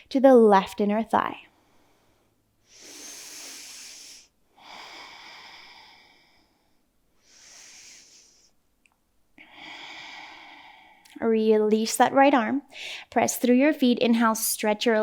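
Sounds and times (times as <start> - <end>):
person breathing slowly: 1.5 - 8.6, 9.4 - 11.1.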